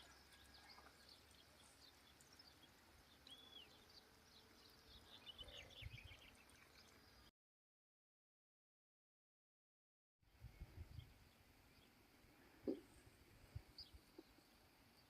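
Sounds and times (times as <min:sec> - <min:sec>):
faint bird chirps: 0:00.0 - 0:07.3.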